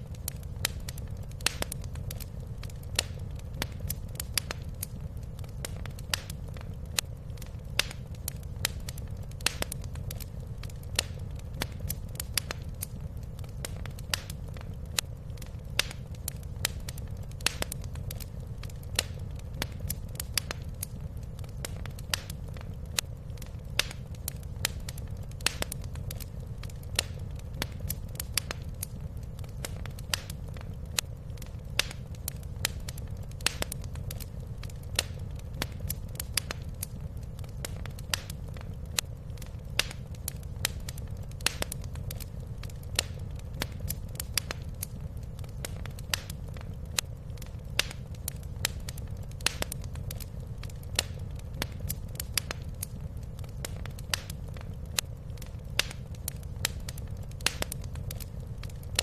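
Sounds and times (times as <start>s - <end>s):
fire crackling and popping: 0.0s - 59.0s
low fire rumble: 0.0s - 59.0s.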